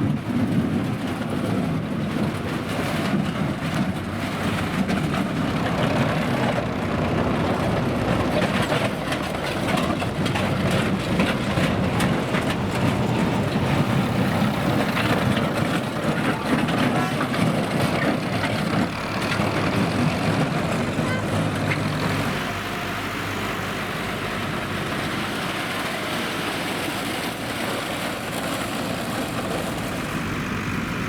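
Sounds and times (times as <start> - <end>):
knocks and clatter: 0.0 - 22.4
racing car engines running: 0.3 - 26.2.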